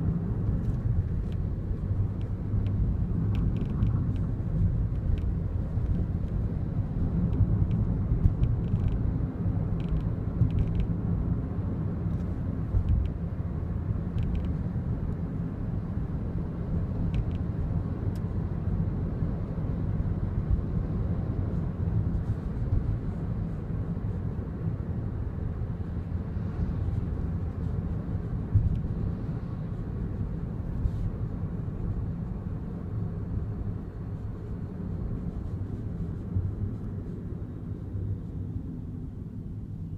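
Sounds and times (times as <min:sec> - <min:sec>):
road and engine rumble: 0:00.0 - 0:39.9
seat belt clicks and rattles: 0:00.5 - 0:06.5, 0:07.2 - 0:11.0, 0:12.2 - 0:13.2, 0:14.1 - 0:14.7, 0:17.0 - 0:18.3.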